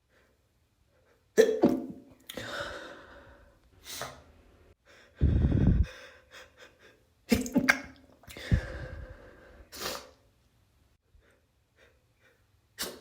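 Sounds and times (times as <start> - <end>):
gasping breaths: 4.9 - 6.6, 8.3 - 9.8
microphone blast rumble: 5.2 - 5.9
person sneezing: 12.8 - 13.0.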